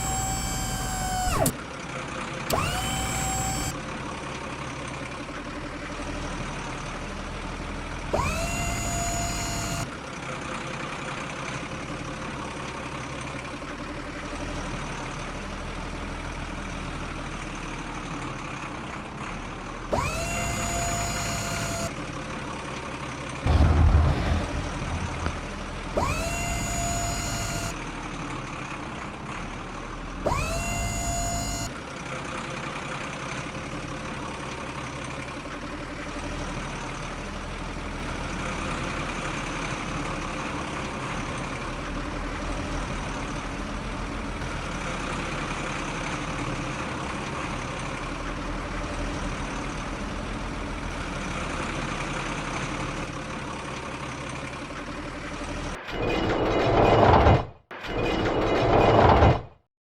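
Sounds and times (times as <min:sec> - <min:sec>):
rising whine: 0:00.0 - 0:01.6, 0:02.5 - 0:03.7, 0:08.2 - 0:09.9, 0:23.5 - 0:27.8
heavy machinery engine running: 0:00.0 - 0:59.6
loud deep rumble: 0:23.4 - 0:27.6.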